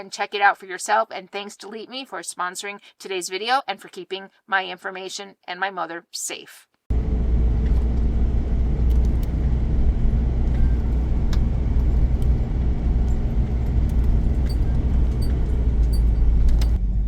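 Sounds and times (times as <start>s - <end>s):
vehicle engine and road rumble: 6.9s - 17.0s.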